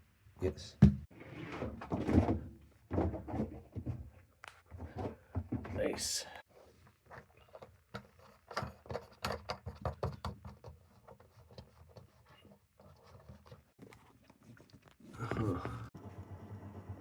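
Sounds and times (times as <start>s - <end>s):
washing machine scraping: 1.1s - 3.5s, 15.9s - 17.0s.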